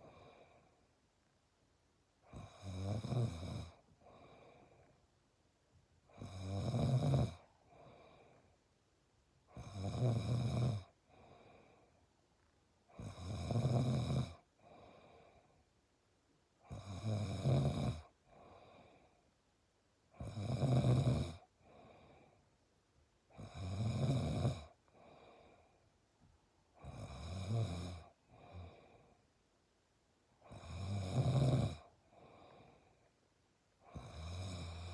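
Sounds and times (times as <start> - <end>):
snoring: 0.0 - 0.7, 2.2 - 4.9, 6.1 - 8.4, 9.5 - 11.8, 12.9 - 15.5, 16.6 - 19.1, 20.1 - 22.4, 23.3 - 25.7, 26.8 - 29.2, 30.4 - 33.0, 33.8 - 34.9
soft breath out: 0.0 - 0.9, 3.9 - 5.1, 7.6 - 8.6, 11.0 - 12.1, 14.6 - 15.7, 18.2 - 19.3, 21.6 - 22.5, 24.9 - 25.9, 28.2 - 29.3, 32.0 - 33.2.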